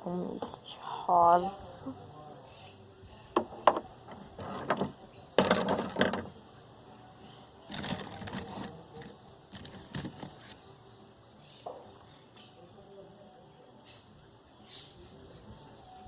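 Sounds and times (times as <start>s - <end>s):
paper rustling and scraping: 7.7s - 10.6s.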